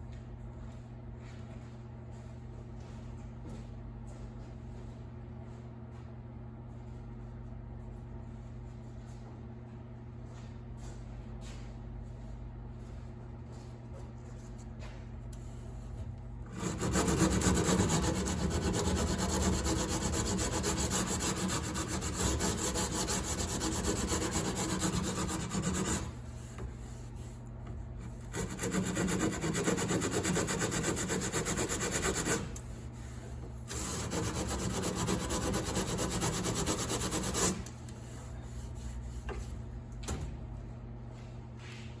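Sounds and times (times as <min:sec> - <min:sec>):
hand saw cutting: 0:16.5 - 0:26.2, 0:28.2 - 0:32.6, 0:33.7 - 0:37.7.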